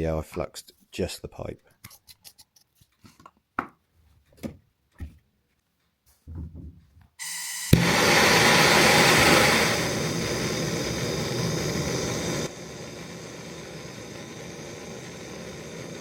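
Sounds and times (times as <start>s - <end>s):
blowtorch flame hissing: 7.2s - 16.0s.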